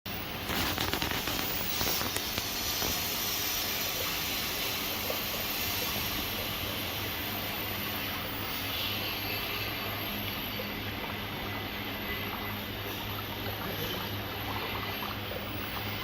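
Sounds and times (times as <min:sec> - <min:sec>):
machinery hiss: 0:00.3 - 0:09.6.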